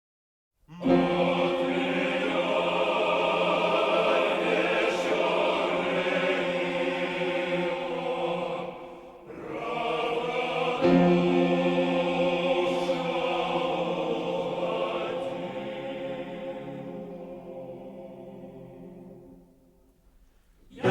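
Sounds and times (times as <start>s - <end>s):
choir singing held chords: 0.7s - 19.8s, 20.6s - 20.9s.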